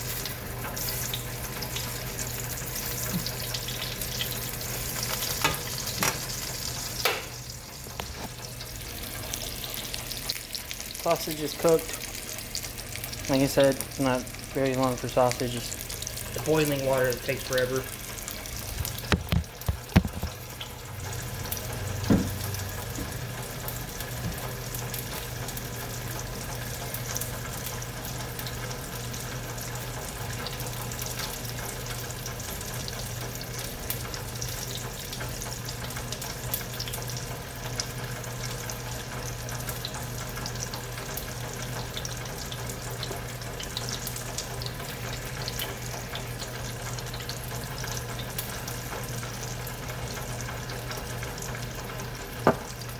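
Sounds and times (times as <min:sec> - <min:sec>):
sausage sizzling in a frying pan: 0:00.0 - 0:52.9
utensil knocking on pan: 0:07.0 - 0:07.4, 0:19.0 - 0:20.4, 0:22.0 - 0:23.2, 0:52.4 - 0:52.7.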